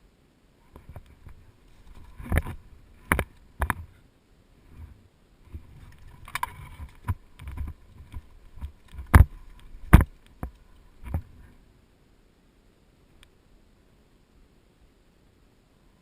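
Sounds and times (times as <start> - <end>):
sharp knocks and clicks: 6.0 - 11.3.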